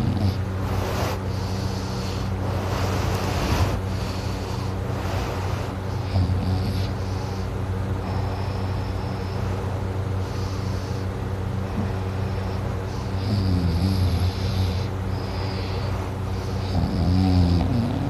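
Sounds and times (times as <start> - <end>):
snore: 0.0 - 7.4, 11.7 - 18.0
person breathing heavily in sleep: 0.0 - 18.0
steady low hum: 0.0 - 18.0.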